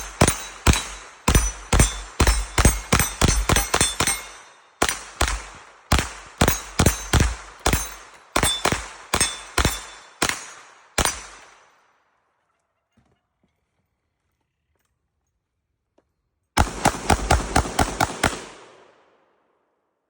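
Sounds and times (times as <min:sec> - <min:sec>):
gunshots: 0:00.0 - 0:11.7, 0:16.6 - 0:19.0.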